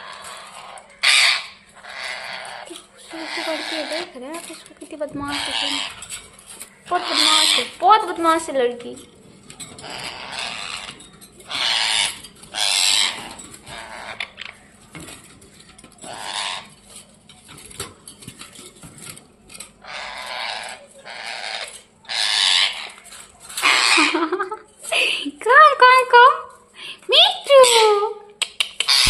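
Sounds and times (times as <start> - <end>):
parrot squawking: 0.0 - 8.6, 9.7 - 14.5, 16.0 - 16.8, 19.8 - 24.4, 27.4 - 28.2, 28.8 - 29.0.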